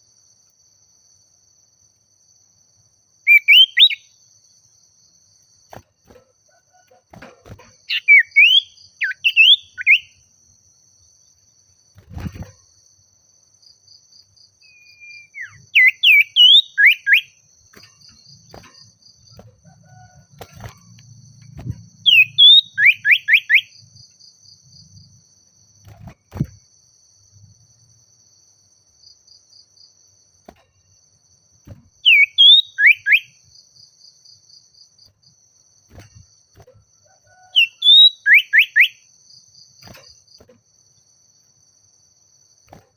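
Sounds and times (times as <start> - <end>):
bird whistling calls: 3.3 - 4.1, 7.9 - 10.1, 14.6 - 17.3, 22.0 - 23.7, 32.0 - 33.3, 37.5 - 39.0.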